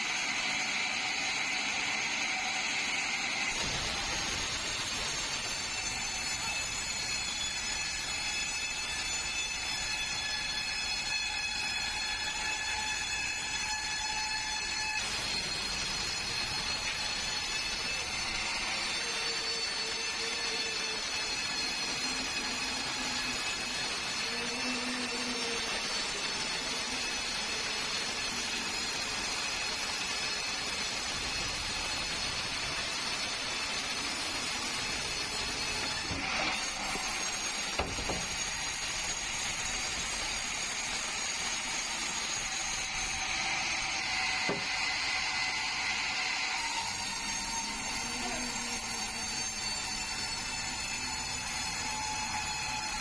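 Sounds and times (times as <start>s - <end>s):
sawmill blade cutting log: 14.3s - 53.0s.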